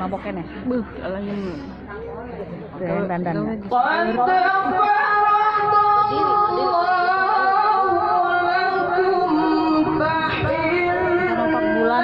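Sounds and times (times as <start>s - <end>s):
person chanting recitation: 3.7s - 12.0s.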